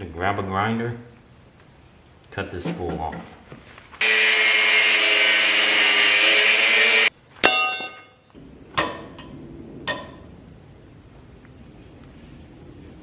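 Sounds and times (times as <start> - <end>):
angle grinder cutting steel: 4.0 - 7.1
ringing metallic clang: 7.4 - 9.1.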